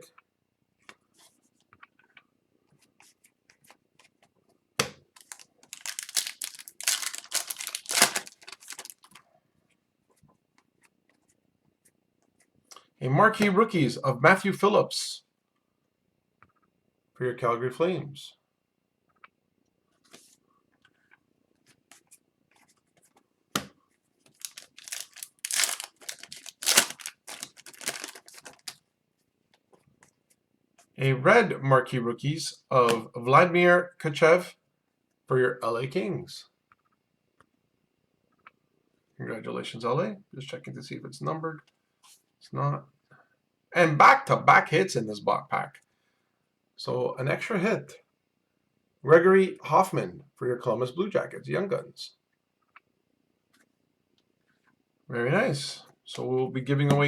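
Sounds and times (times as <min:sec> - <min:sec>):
wrapper tearing and crinkling: 0:05.2 - 0:09.2, 0:24.4 - 0:28.8.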